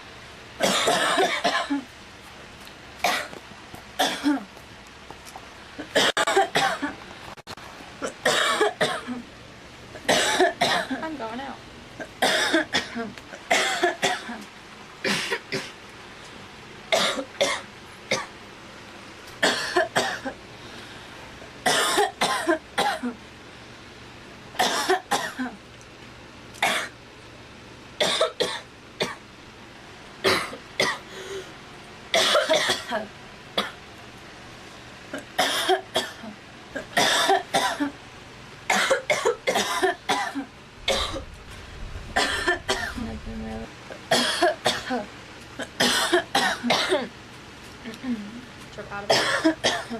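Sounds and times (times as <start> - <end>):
girl coughing: 0.6 - 1.9, 3.0 - 3.3, 4.0 - 4.5, 5.8 - 6.9, 8.0 - 9.2, 10.1 - 11.1, 12.0 - 14.4, 15.0 - 15.8, 16.9 - 18.3, 19.4 - 20.4, 21.6 - 23.2, 24.6 - 25.6, 28.0 - 29.2, 30.2 - 31.0, 32.2 - 33.8, 35.4 - 38.0, 38.7 - 41.2, 42.2 - 43.2, 44.1 - 47.1, 49.1 - 49.9.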